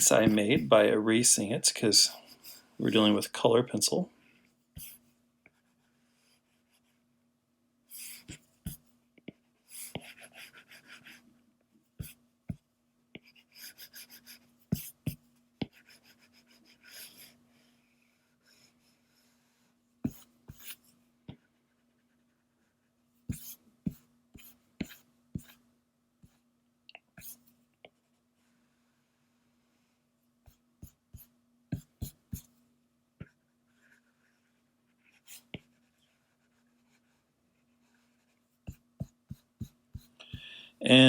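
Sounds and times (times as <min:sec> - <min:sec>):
pencil rubbing on paper: 0:09.6 - 0:11.2, 0:13.2 - 0:17.4, 0:18.1 - 0:25.6, 0:33.7 - 0:40.4.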